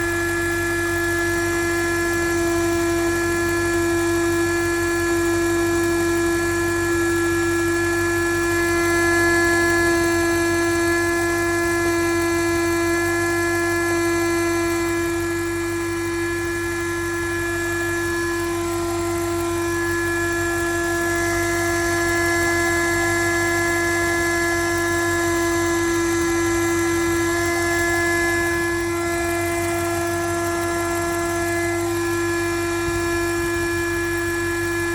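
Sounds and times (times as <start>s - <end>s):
engine buzzing hum: 12.0s - 34.9s.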